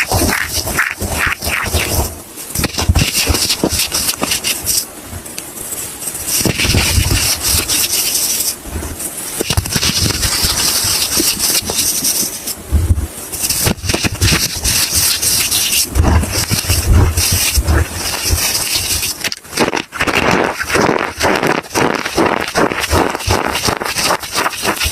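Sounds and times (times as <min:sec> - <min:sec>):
soap crackling and crunching: 0:13.6 - 0:24.9.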